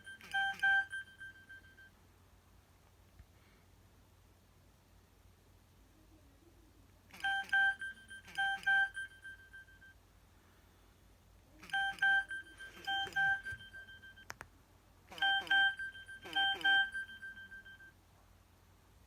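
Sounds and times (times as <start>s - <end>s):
phone speaker electronic beeps: 0.0s - 1.9s, 7.2s - 10.0s, 11.6s - 14.3s, 15.1s - 17.9s.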